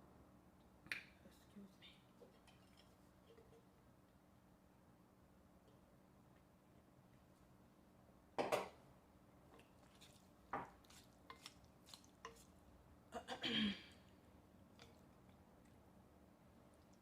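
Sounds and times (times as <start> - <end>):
close-up eating sounds: 9.4 - 17.0.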